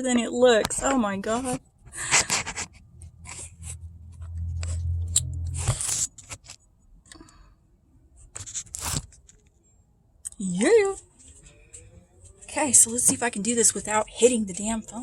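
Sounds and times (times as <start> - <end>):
scrapes of handling: 0.8 - 6.7.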